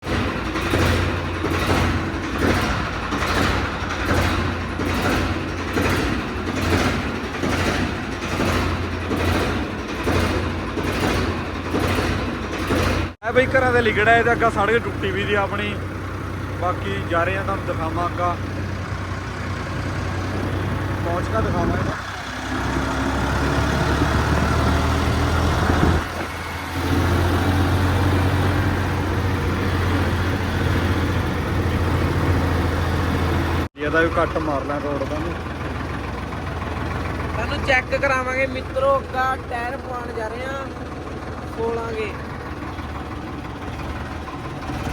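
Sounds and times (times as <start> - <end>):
tractor diesel engine running: 0.0 - 44.9.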